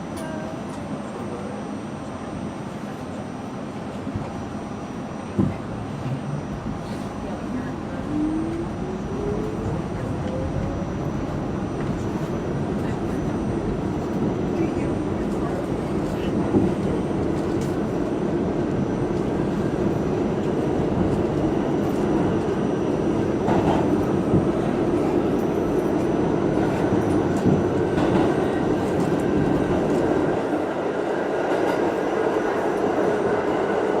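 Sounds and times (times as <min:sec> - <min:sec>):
subway wheels rumbling on rail: 0:00.0 - 0:34.0.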